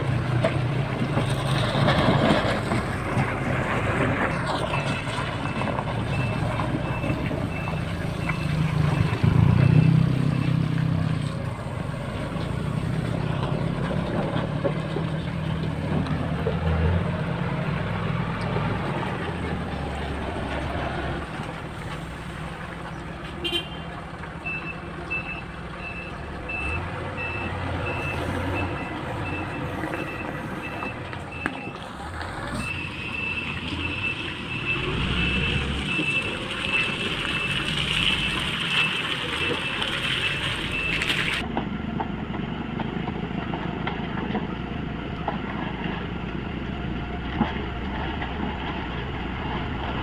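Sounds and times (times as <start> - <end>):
diesel engine running: 0.0 - 50.0
reversing alarm beeps: 4.6 - 10.6, 24.5 - 31.8, 32.6 - 41.1.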